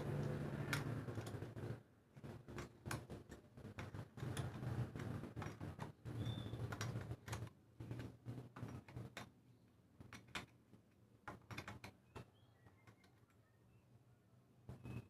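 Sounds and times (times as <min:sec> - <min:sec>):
metal tools clicking and knocking: 0:02.2 - 0:09.4, 0:10.0 - 0:13.4.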